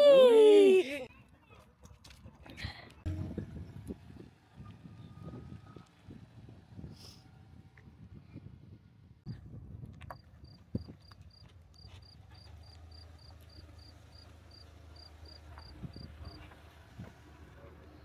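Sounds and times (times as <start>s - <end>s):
cricket chirping: 10.4s - 16.1s.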